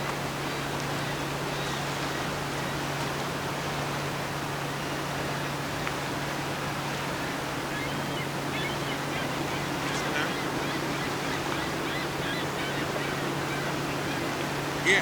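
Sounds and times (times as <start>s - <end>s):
short bird calls: 7.7s - 15.0s.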